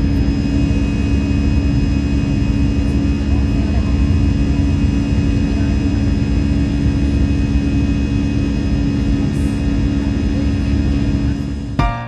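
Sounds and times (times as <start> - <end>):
jet engine cabin drone: 0.0 - 12.0.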